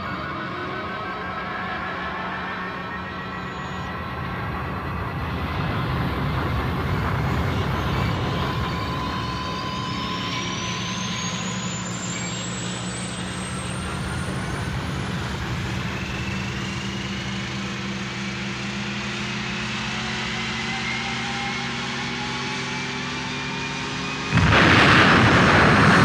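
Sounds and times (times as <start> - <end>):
spaceship engine low hum: 0.0 - 23.1, 24.0 - 26.0
high whines rising in pitch: 0.0 - 26.0
rushing noise: 24.3 - 26.0.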